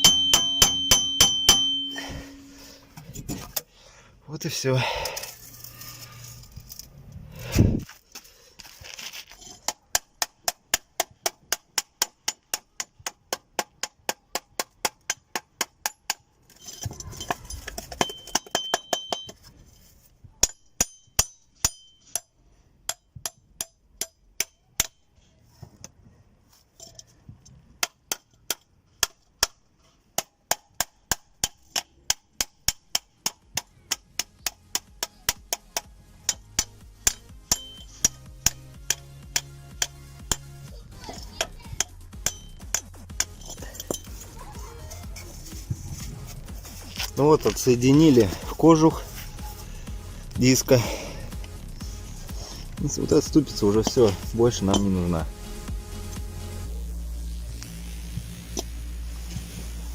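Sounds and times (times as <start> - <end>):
hammer striking metal: 0.0 - 2.5, 17.3 - 19.4, 20.4 - 22.3, 22.9 - 25.1, 30.2 - 40.5, 41.3 - 44.2, 53.2 - 55.2.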